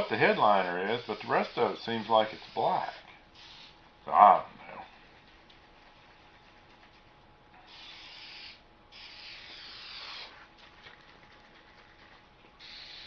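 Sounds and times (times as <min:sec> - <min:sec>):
aerosol spray can hissing: 0:00.3 - 0:03.8, 0:07.7 - 0:10.4, 0:12.6 - 0:13.0.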